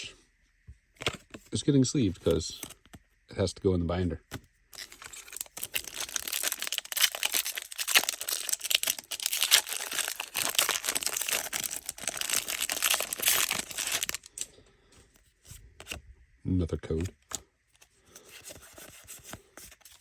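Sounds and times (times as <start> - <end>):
foil wrapper crinkling: 4.7 - 14.5.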